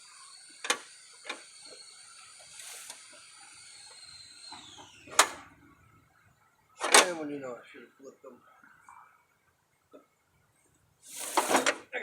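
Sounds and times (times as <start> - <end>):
high-pitched whine: 0.0 - 6.8
metal scrape: 11.0 - 11.8.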